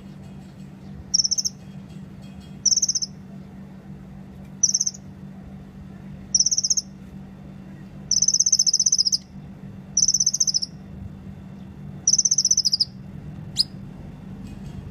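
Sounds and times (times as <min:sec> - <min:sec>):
bird chirp: 0:00.8 - 0:01.6, 0:02.6 - 0:03.2, 0:04.6 - 0:05.0, 0:06.3 - 0:06.9, 0:08.1 - 0:09.3, 0:10.0 - 0:10.8, 0:12.0 - 0:13.8
bird trilling: 0:01.1 - 0:01.6, 0:02.6 - 0:03.2, 0:04.6 - 0:05.1, 0:06.3 - 0:06.9, 0:08.1 - 0:09.3, 0:10.0 - 0:10.8, 0:12.0 - 0:13.8.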